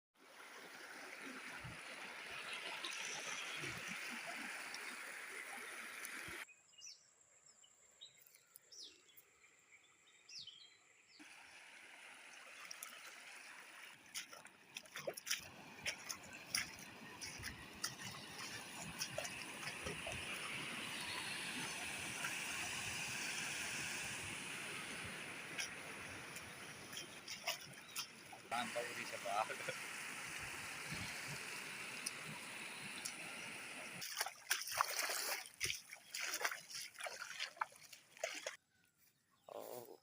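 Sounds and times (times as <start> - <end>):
floodwater rushing: 0.2 - 6.4, 11.2 - 38.6
water splashes: 0.2 - 6.4, 11.2 - 38.6.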